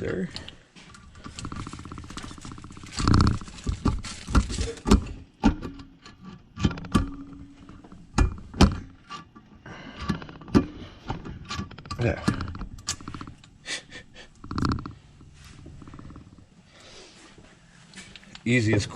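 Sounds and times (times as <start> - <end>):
steel parts clicking and clacking: 0.0 - 13.6.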